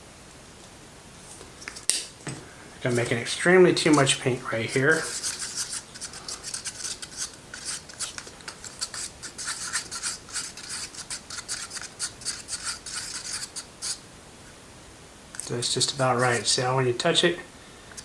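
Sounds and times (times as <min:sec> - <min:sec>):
stirrer scraping a cup: 0:03.8 - 0:14.0.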